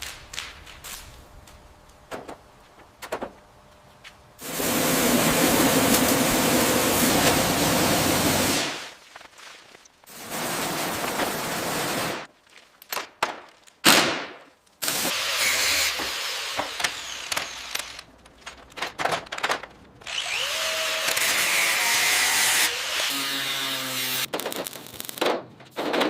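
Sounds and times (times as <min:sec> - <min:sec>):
power tool bursts: 0:04.4 - 0:08.9, 0:14.8 - 0:18.1.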